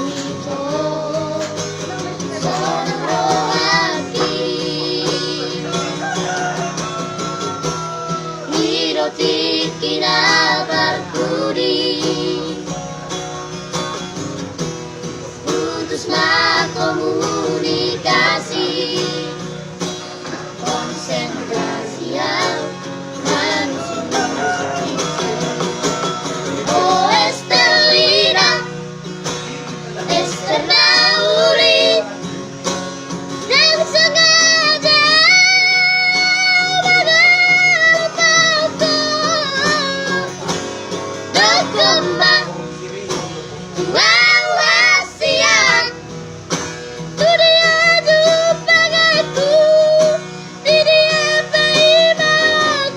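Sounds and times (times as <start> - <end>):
children singing: 0.0 - 6.0, 6.9 - 12.8, 15.4 - 19.6, 20.2 - 28.8, 29.9 - 32.2, 41.3 - 42.6, 43.8 - 46.1
instrumental backing music: 0.0 - 52.9.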